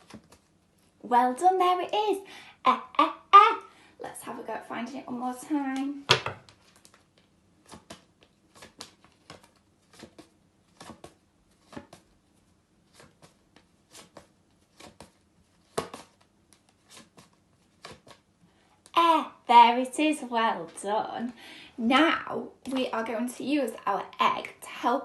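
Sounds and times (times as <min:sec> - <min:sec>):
flashcards flicking: 0:00.0 - 0:00.6, 0:05.8 - 0:12.2, 0:12.8 - 0:18.9.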